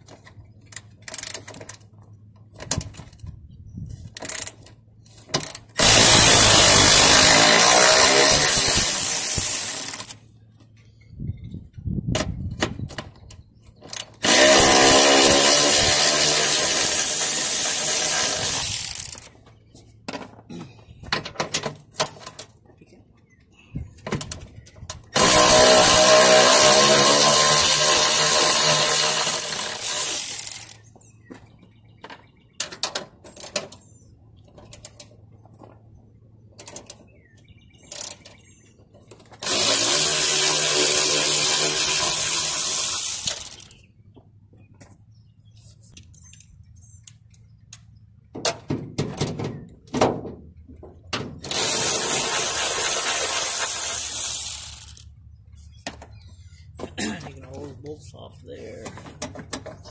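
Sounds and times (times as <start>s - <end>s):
clicks and clanks of tool and bolts: 0.0s - 3.3s, 4.1s - 6.0s, 12.1s - 14.3s, 20.1s - 22.6s, 32.0s - 33.9s, 34.5s - 35.8s, 36.6s - 37.1s, 46.0s - 51.8s, 58.8s - 59.9s
power drill spinning bolts: 0.1s - 1.9s, 4.1s - 10.2s, 13.8s - 19.4s, 24.2s - 30.9s, 32.7s - 33.9s, 37.8s - 38.5s, 39.1s - 43.8s, 51.4s - 55.1s.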